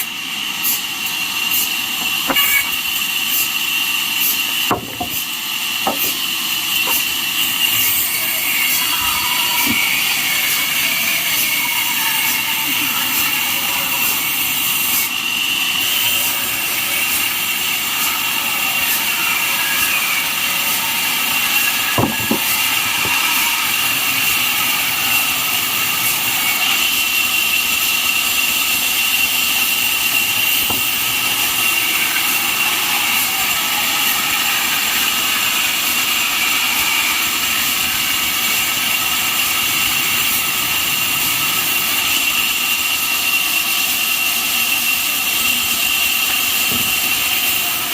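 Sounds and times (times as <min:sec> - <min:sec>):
band sawmill running: 0:00.0 - 0:47.9.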